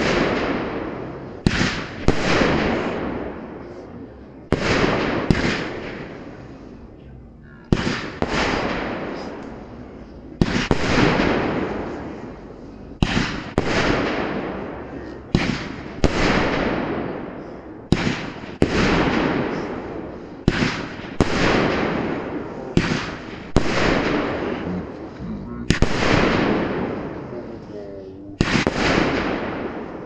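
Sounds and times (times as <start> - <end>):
firework bangs: 0.0 - 6.7, 7.7 - 27.5, 28.4 - 30.0
crackling hiss: 0.0 - 30.0.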